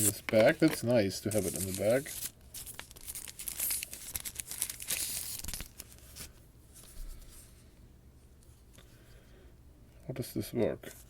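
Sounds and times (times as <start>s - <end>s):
plastic bag crinkling: 0.0s - 6.1s.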